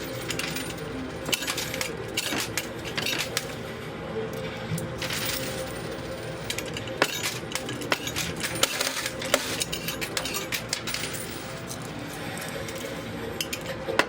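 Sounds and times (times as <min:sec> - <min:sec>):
coins clinking and dropping: 0:00.0 - 0:03.7, 0:04.4 - 0:14.0
arcade machine background: 0:00.0 - 0:14.0.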